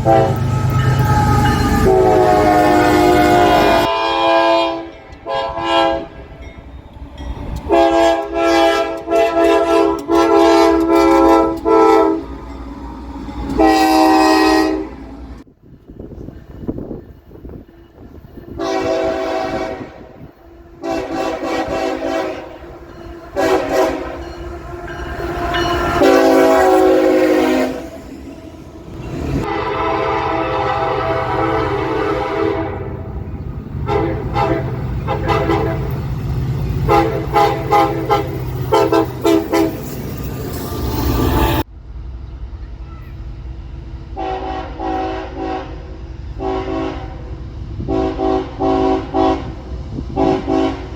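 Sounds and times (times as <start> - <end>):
train air horn blasts: 0.0 - 6.3, 7.7 - 12.4, 13.5 - 15.2, 18.4 - 28.1, 29.2 - 36.0, 36.8 - 39.8, 44.2 - 50.9
low rumble of train: 0.0 - 50.9.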